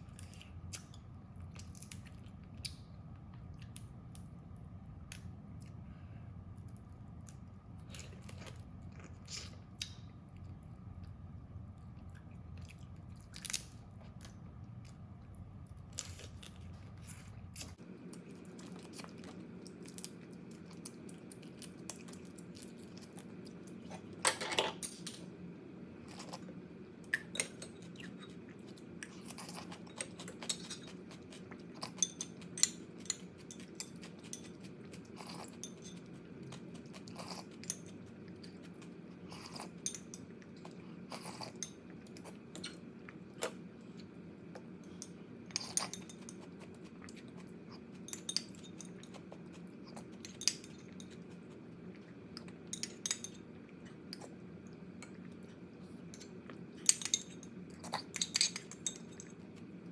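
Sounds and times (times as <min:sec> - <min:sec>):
chewing: 0:26.1 - 0:59.9.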